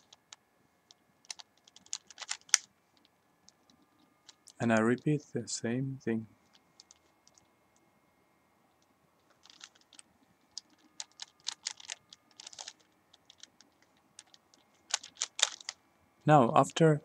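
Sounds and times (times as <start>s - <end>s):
puzzle cube layers clicking: 1.2s - 4.6s, 9.3s - 15.8s.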